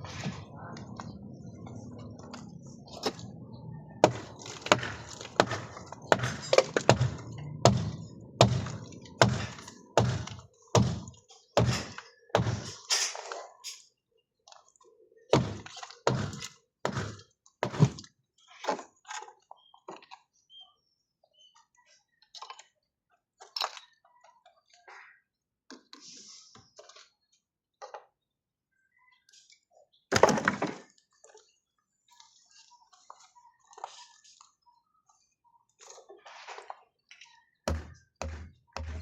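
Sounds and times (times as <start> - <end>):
heavy thuds: 4.0 - 12.6.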